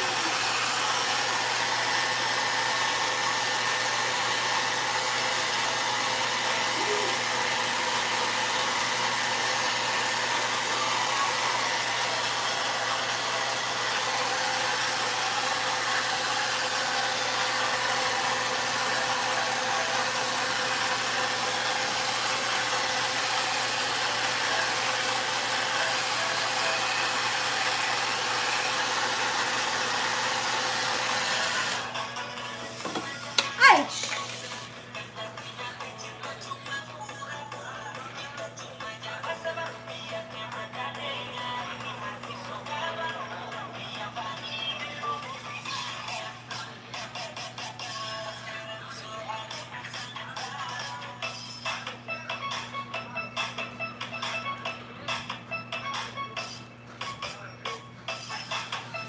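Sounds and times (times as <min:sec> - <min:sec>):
hair dryer blowing: 0:00.0 - 0:34.9.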